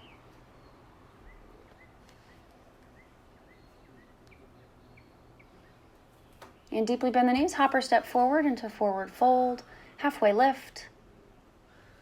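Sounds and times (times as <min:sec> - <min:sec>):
bird chirping faintly: 0:00.0 - 0:07.0.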